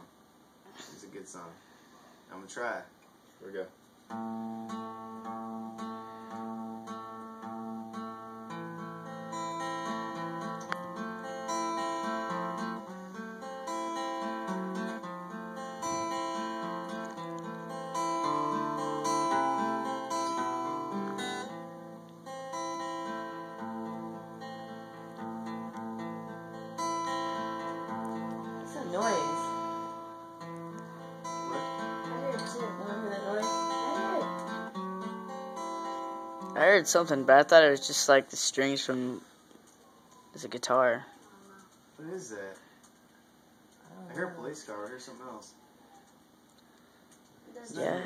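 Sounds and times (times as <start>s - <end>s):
acoustic guitar strumming and plucking: 4.0s - 39.1s, 47.7s - 48.0s.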